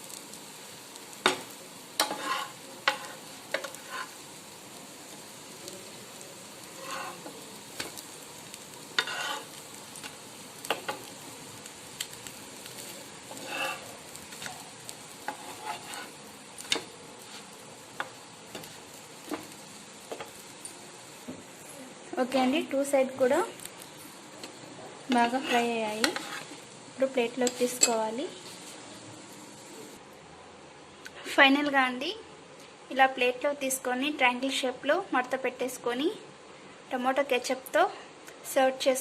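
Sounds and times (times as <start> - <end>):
faint sizzle of frying: 0.0 - 39.0
utensil tapping and scraping pan: 2.0 - 4.1, 6.8 - 7.9, 9.0 - 9.5, 15.2 - 17.4, 25.1 - 26.6.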